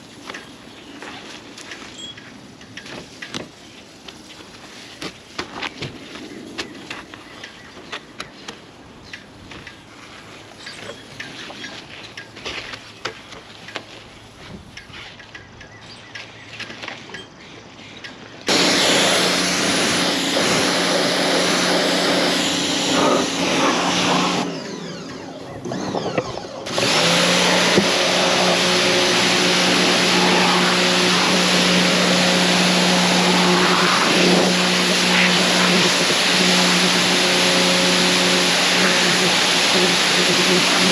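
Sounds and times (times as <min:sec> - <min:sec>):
pressure washer spraying: 0:18.5 - 0:25.9, 0:26.5 - 0:40.9.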